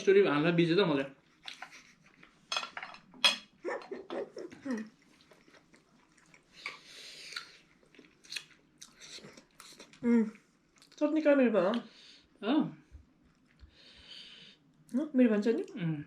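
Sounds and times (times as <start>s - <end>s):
dishes and cutlery clicking: 2.5s - 3.5s
chewing: 4.2s - 11.0s, 13.2s - 14.0s.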